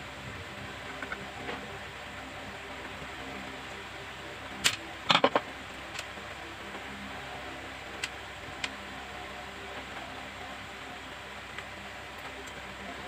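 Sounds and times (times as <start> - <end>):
sharp clicks and clatters: 4.6 - 6.1.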